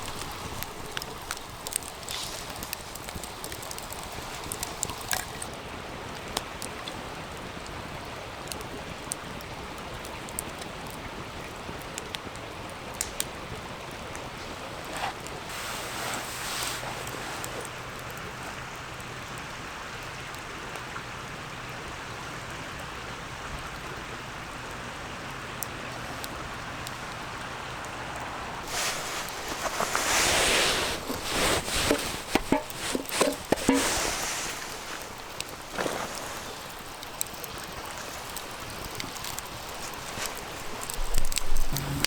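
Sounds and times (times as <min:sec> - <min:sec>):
hissing and crackling with clicks: 0:00.0 - 0:05.5, 0:13.0 - 0:18.7, 0:28.6 - 0:42.0
stream rushing: 0:14.8 - 0:17.9, 0:26.0 - 0:42.0.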